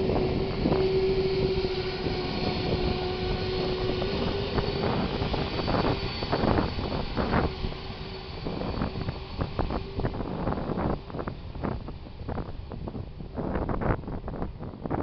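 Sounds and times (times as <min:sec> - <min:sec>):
faint high whine: 0:00.0 - 0:14.2
jet engine drone: 0:00.0 - 0:15.0.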